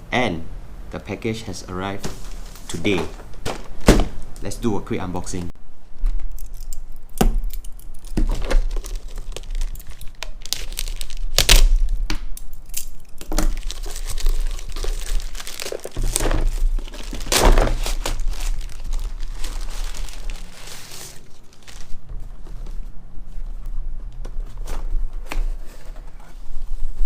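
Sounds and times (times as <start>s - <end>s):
packaging being torn and crinkled: 7.5s - 22.0s.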